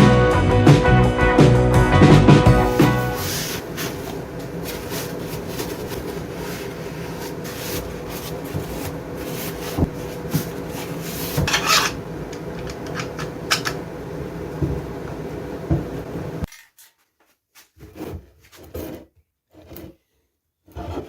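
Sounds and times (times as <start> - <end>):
steady faint hum: 2.4 - 16.5
rubbing and scraping: 2.7 - 12.0.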